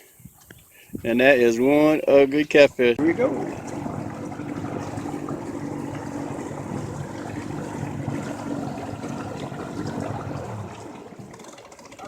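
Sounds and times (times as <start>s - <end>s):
water rushing past hull: 0.8s - 12.0s
boat motor running: 3.0s - 12.0s.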